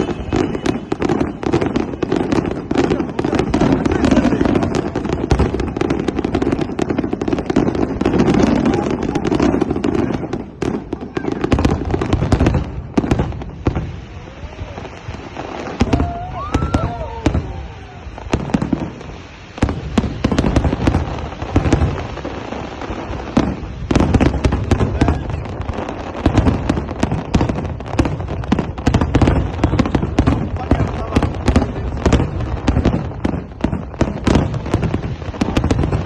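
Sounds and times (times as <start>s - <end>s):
fireworks bangs and crackles: 0.0s - 36.0s.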